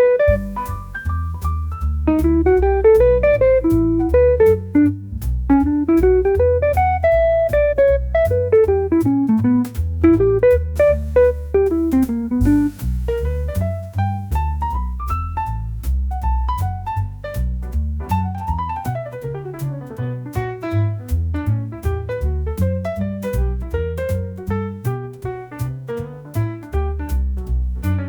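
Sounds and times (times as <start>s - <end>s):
bass line: 0.0s - 28.0s
light drums: 0.0s - 28.0s
plucked guitar melody: 2.1s - 12.7s.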